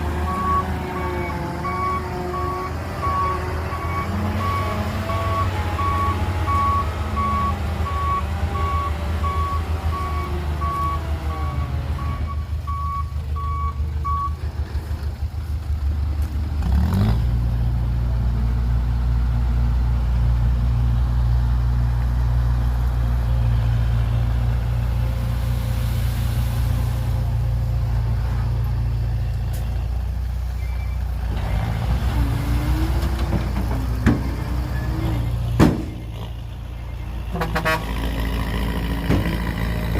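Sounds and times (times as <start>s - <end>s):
diesel engine running: 0.0s - 39.9s
truck backup alarm beeping: 0.1s - 14.4s.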